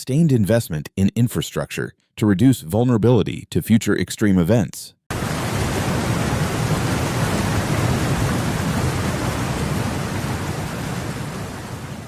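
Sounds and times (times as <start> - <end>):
water rushing: 5.1 - 12.0.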